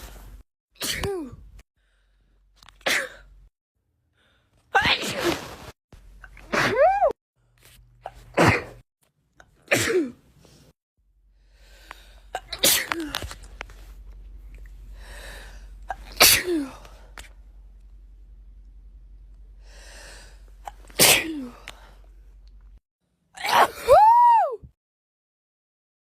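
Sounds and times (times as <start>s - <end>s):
person sneezing: 0.8s - 1.4s, 2.8s - 3.3s, 4.8s - 5.7s, 6.4s - 7.2s, 8.0s - 8.8s, 9.7s - 10.2s, 12.3s - 13.4s, 15.9s - 17.0s, 20.7s - 21.7s, 23.4s - 24.1s.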